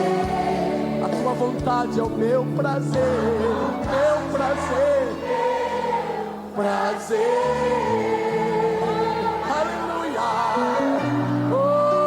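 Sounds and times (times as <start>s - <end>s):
band accompaniment: 0.0s - 5.4s
congregation choir singing: 0.0s - 12.0s
lead singer singing: 0.0s - 12.0s.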